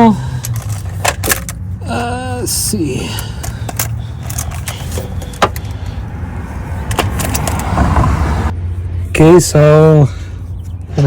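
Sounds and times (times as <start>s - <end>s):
steady low hum: 0.0s - 11.0s
hand tools clinking against metal: 3.0s - 5.7s.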